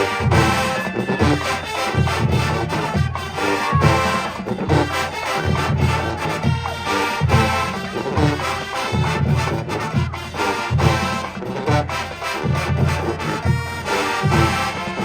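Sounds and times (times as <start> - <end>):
marching band brass playing: 0.0 - 15.0.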